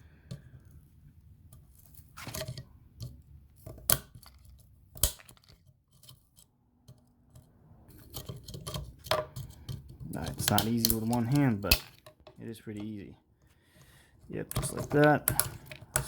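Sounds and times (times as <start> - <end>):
small clicks and handling noise: 0.2 - 16.0
plastic tabs snapping: 8.6 - 13.0, 14.5 - 16.0.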